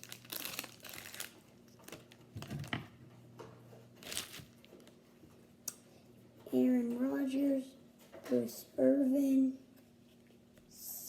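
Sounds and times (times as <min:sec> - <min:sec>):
card pack wrapper crinkling: 0:00.0 - 0:02.7, 0:04.0 - 0:04.7.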